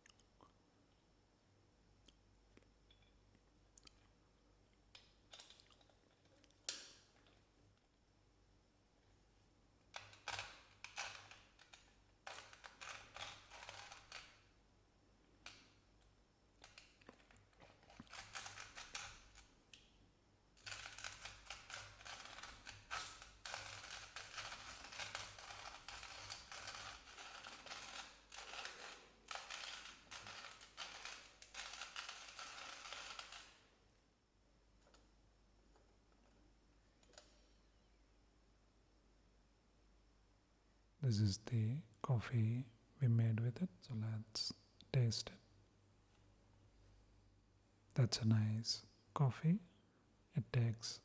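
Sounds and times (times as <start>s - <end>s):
coffee grinder crunching beans: 16.7s - 19.4s, 20.6s - 33.6s.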